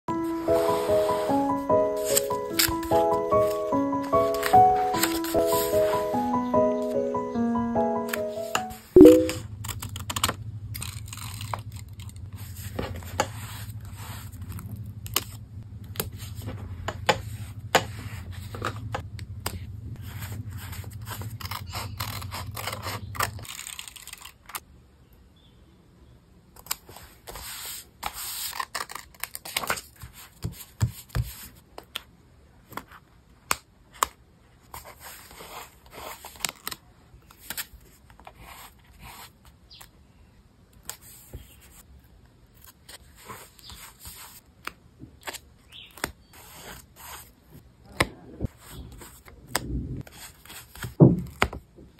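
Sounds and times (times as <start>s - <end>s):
paper scratching and rustling: 2.0s - 6.0s
paper snipping and tearing: 21.0s - 24.6s.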